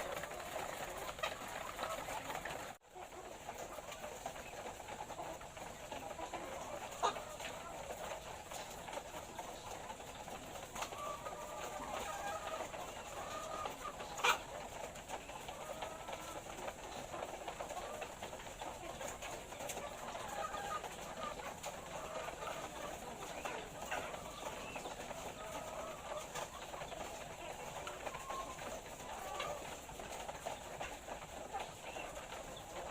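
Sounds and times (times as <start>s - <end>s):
hens clucking: 0.0s - 32.9s.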